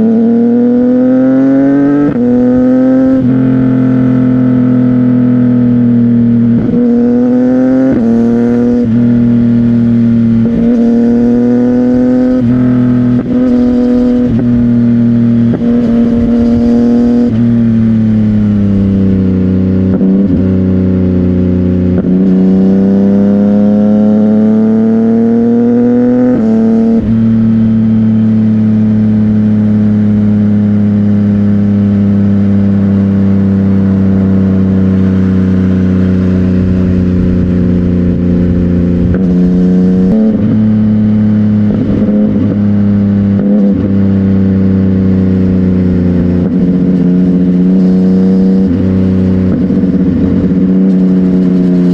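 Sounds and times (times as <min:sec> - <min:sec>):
motorcycle engine revving through gears: 0:00.0 - 0:51.9.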